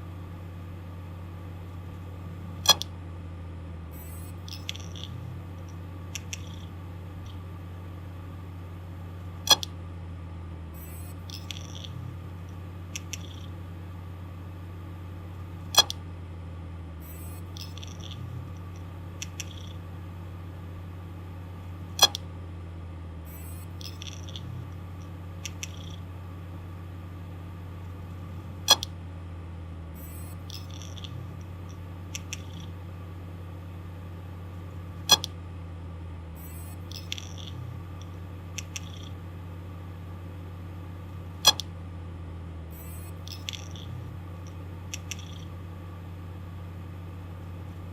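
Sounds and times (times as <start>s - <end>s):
hard drive spindle motor hum: 0.0s - 47.9s
hard drive sharp click: 2.6s - 3.0s, 9.4s - 9.8s, 15.7s - 16.1s, 22.0s - 22.3s, 28.6s - 29.0s, 35.0s - 35.4s, 41.4s - 41.8s, 42.8s - 45.6s.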